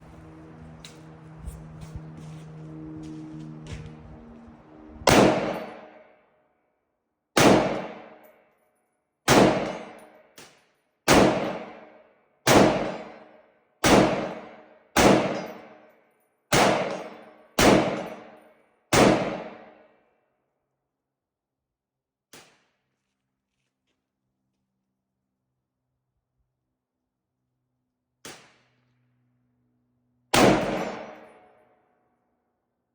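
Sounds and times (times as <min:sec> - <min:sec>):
rifle shots with ringing tail: 0:05.0 - 0:06.2, 0:07.4 - 0:08.3, 0:09.3 - 0:10.5, 0:11.1 - 0:15.9, 0:16.5 - 0:19.8, 0:30.3 - 0:31.5.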